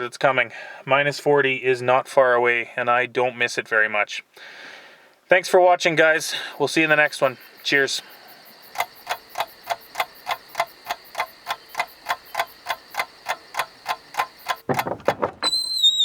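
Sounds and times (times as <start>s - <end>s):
steady even ticking: 6.6s - 15.0s
knocks: 14.2s - 15.5s
short high squeal: 15.4s - 16.0s.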